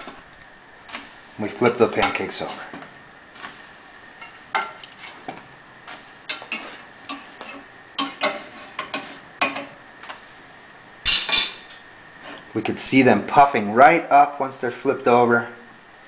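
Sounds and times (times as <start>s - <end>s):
pancakes sizzling in a pan: 0.0s - 13.0s
spatula scraping and tapping pan: 1.7s - 3.6s, 4.2s - 10.2s.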